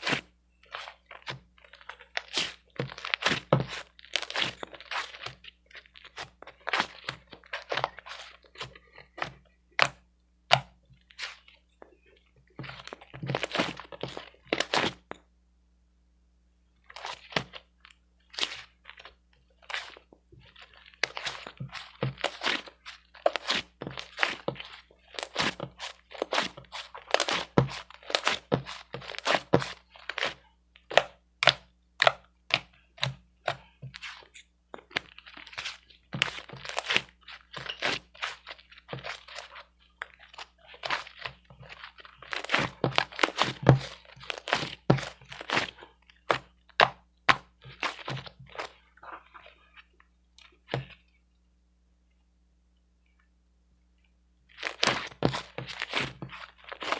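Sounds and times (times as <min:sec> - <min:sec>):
crunching and crackling: 0:00.0 - 0:15.2, 0:16.8 - 0:51.2, 0:54.5 - 0:56.9.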